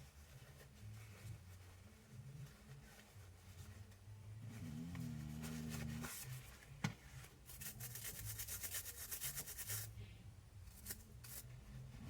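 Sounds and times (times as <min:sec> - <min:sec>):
scratchy rubbing strokes: 0:07.5 - 0:09.9.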